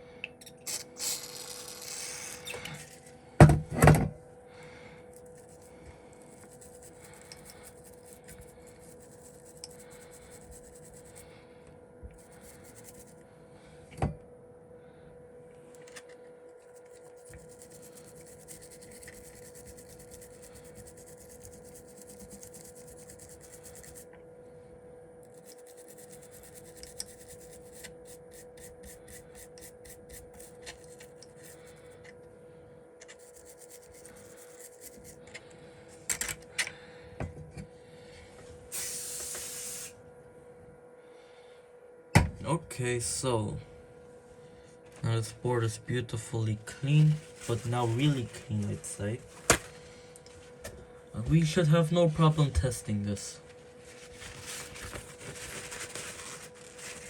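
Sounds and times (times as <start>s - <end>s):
brush scrubbing: 5.2s - 11.3s, 12.1s - 13.2s, 16.6s - 24.1s, 25.3s - 32.0s, 33.0s - 35.2s, 47.1s - 49.2s, 53.8s - 57.0s
aerosol spray hiss: 38.7s - 40.0s.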